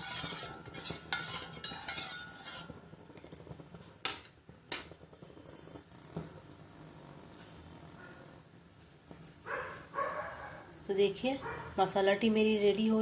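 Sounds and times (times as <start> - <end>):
spoon scraping a saucepan: 0.0 - 2.8.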